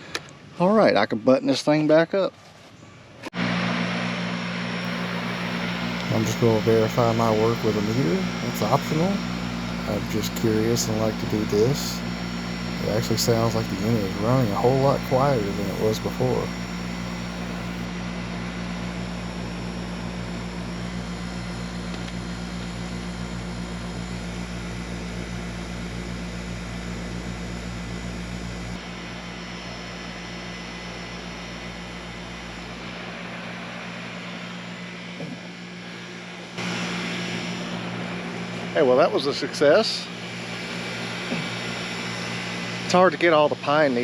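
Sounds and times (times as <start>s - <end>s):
condenser fan rushing: 4.6s - 18.3s
compressor hum: 4.7s - 17.9s.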